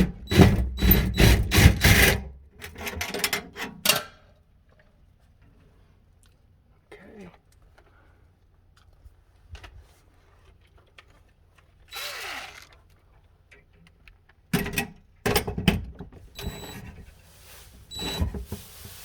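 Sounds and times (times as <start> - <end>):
power driver bursts with whine: 16.4 - 17.0, 17.8 - 19.0.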